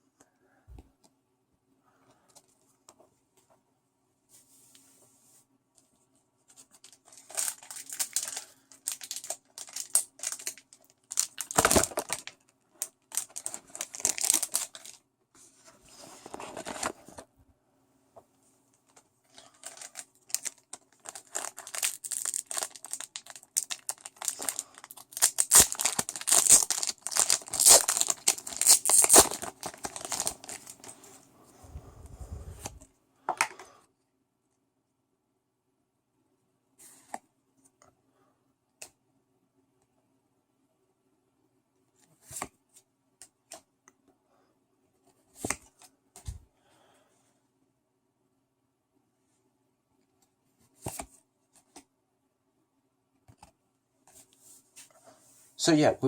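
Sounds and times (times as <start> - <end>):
foil wrapper tearing and crinkling: 6.8 - 12.4, 13.1 - 15.0, 19.4 - 31.0.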